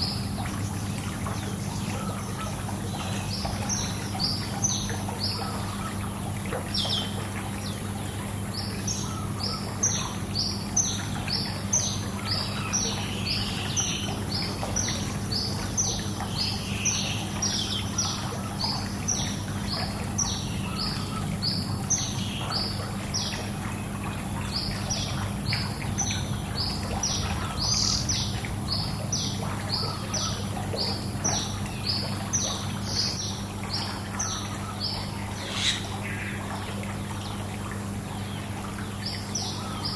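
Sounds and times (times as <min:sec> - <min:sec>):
low steady hum: 0:00.0 - 0:39.9
pool water noise: 0:00.0 - 0:39.9
small birds chirping: 0:08.6 - 0:36.7.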